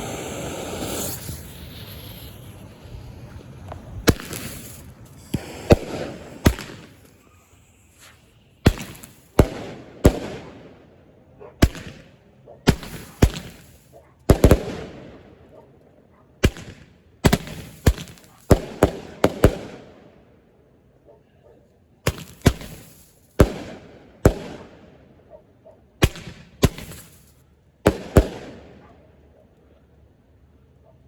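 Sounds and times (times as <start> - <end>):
fireworks banging: 0.0 - 11.0, 11.6 - 15.4, 16.4 - 20.0, 22.1 - 25.0, 26.0 - 28.9.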